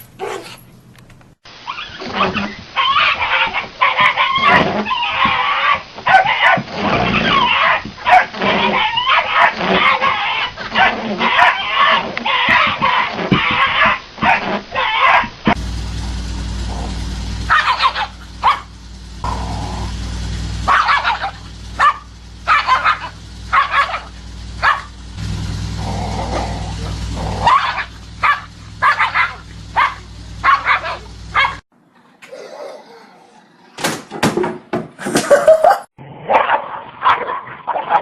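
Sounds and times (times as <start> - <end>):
dog barking: 0.2 - 0.6, 2.2 - 15.3, 17.5 - 18.7, 20.7 - 25.0, 26.2 - 31.6, 36.3 - 38.0
background hum: 15.6 - 33.8.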